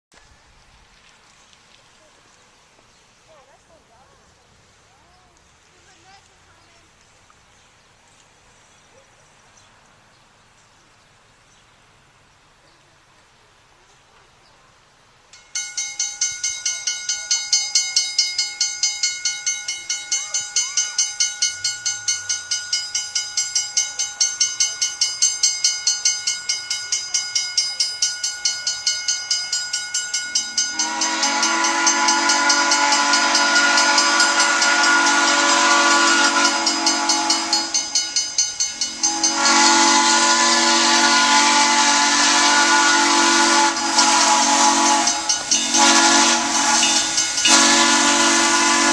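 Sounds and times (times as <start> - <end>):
steam locomotive exhaust chuffing: 15.4 - 48.9
steam whistle chord: 30.2 - 48.9.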